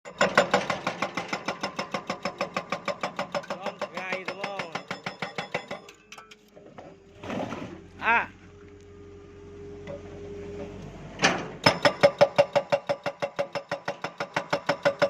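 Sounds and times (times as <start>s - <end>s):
hydraulic breaker hammering rock: 0.1s - 6.0s, 11.6s - 15.0s.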